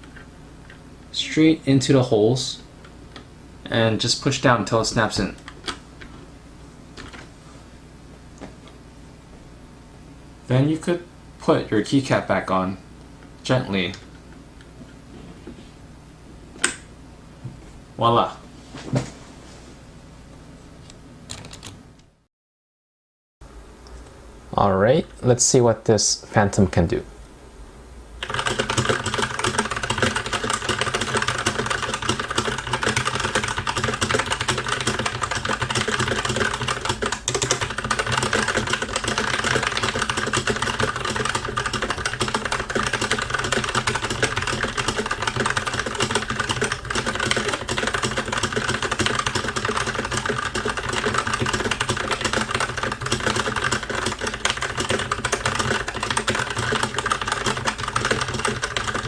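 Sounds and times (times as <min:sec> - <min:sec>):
fast mechanical keyboard typing: 0:21.3 - 0:21.8, 0:28.2 - 0:59.0.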